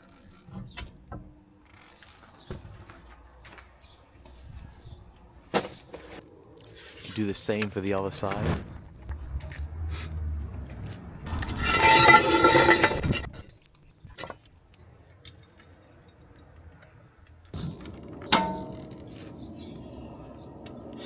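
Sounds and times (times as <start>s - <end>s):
loud metal rattling: 11.3s - 13.3s
metallic clank: 11.3s - 13.4s, 18.3s - 19.0s.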